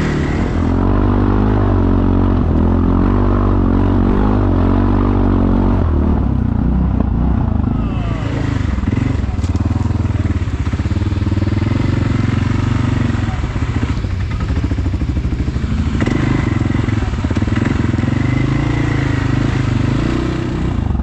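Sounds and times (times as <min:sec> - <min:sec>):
atv engine running: 0:00.0 - 0:21.0.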